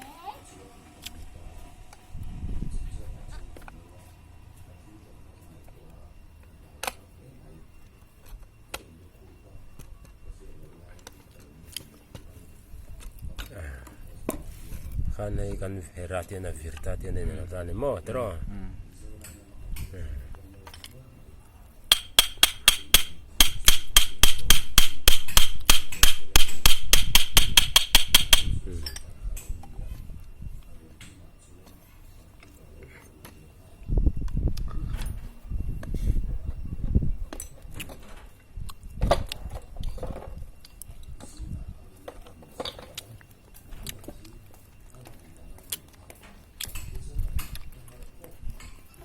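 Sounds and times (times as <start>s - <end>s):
low steady hum: 0.0s - 37.5s
metal-on-metal hammer blows: 21.9s - 28.6s
sharp clicks: 21.9s - 28.6s.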